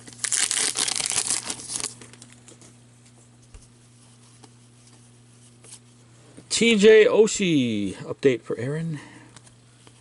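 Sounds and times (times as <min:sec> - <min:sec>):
wrapper tearing and crinkling: 0:00.0 - 0:02.4
low steady hum: 0:00.0 - 0:10.0.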